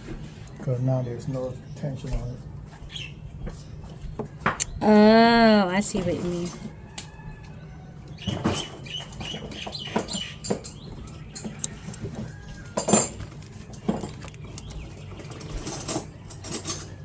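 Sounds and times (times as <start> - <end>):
tools and metal parts clicking: 9.2 - 17.0.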